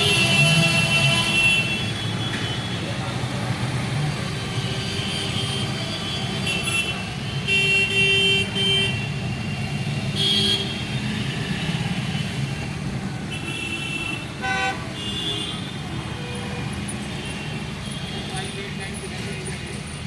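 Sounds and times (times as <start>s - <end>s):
road traffic engine rumble: 0.0s - 20.0s
vehicle horn honking: 13.3s - 15.8s.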